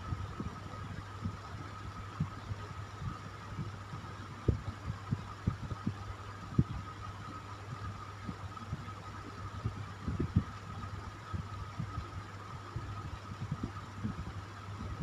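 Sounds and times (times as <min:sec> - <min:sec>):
electric fan humming: 0:00.0 - 0:15.0.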